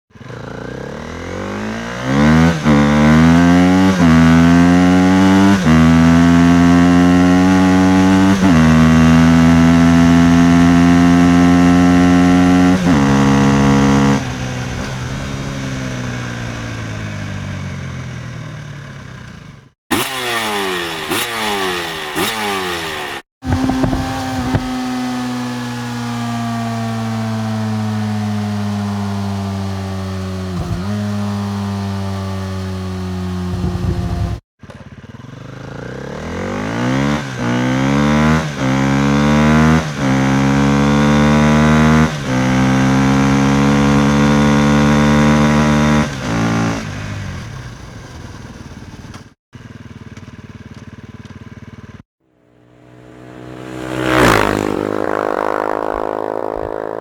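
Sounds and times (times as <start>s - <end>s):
motorcycle accelerating through gears: 0.1s - 57.0s
motorcycle engine revving: 0.1s - 57.0s.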